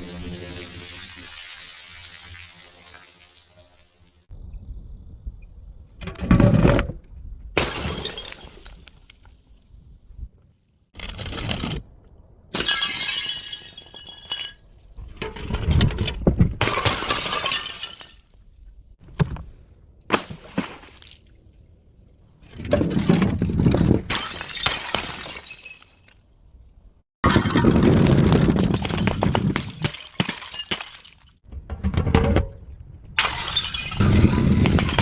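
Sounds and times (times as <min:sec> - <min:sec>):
glass bottles smashing: 0:07.6 - 0:09.5, 0:12.6 - 0:15.6, 0:16.6 - 0:18.3, 0:22.9 - 0:26.3, 0:27.3 - 0:31.4, 0:33.2 - 0:35.0.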